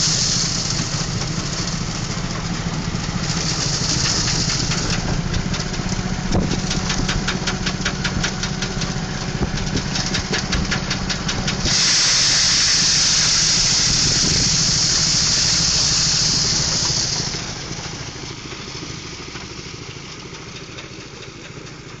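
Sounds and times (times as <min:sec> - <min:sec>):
loud hissing rush: 0:00.0 - 0:18.5
engine hum: 0:00.0 - 0:22.0
threshing machine ticking: 0:03.0 - 0:17.9.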